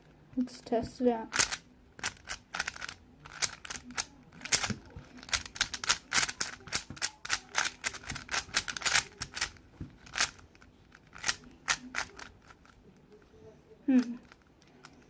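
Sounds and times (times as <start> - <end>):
speed cube layers clacking: 1.3 - 12.8.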